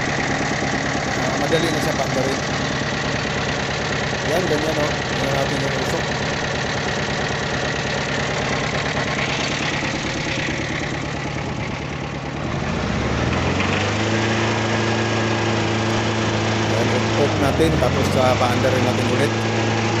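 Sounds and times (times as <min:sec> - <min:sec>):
diesel engine running with knock: 0:00.0 - 0:20.0.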